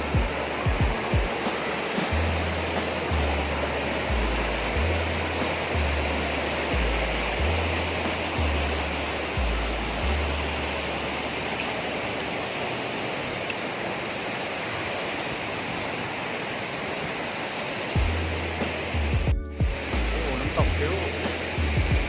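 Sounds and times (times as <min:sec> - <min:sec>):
low bass music: 0:00.0 - 0:11.6, 0:18.0 - 0:22.0
waterfall rushing: 0:00.0 - 0:22.0.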